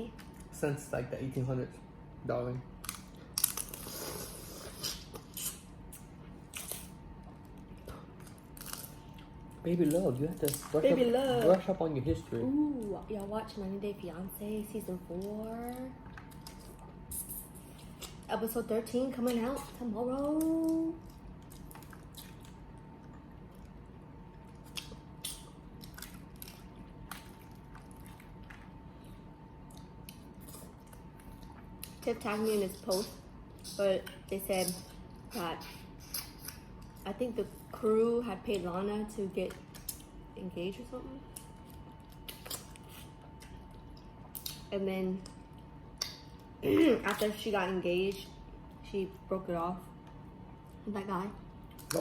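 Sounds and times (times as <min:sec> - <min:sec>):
crawfish shells cracking: 0:09.8 - 0:10.8.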